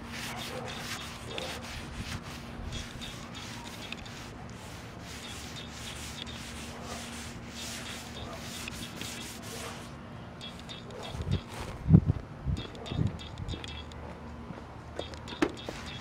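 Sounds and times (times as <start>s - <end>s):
sandpaper rasping on metal: 0.0s - 11.4s.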